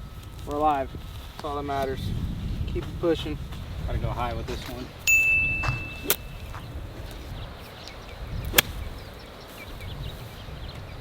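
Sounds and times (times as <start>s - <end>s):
wind rumble on microphone: 0.0s - 11.0s
steady high beep: 5.1s - 6.5s
golf club striking ball: 5.1s - 6.7s, 8.5s - 8.9s.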